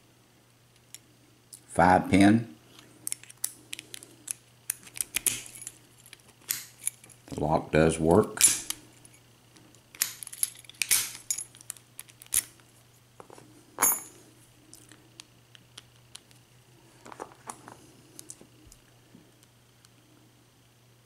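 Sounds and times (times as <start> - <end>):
padlock snapping: 3.1 - 7.1, 9.9 - 12.5.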